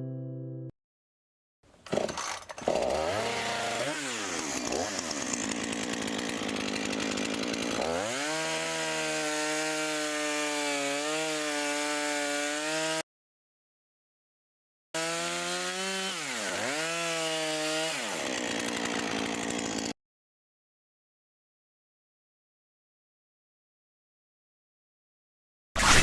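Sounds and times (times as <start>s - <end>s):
chainsaw running: 1.8s - 13.0s, 15.0s - 20.0s.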